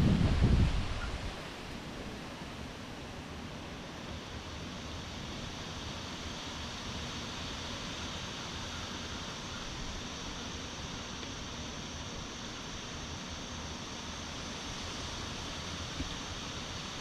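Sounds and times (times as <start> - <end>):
wind blowing: 0.0 - 2.3.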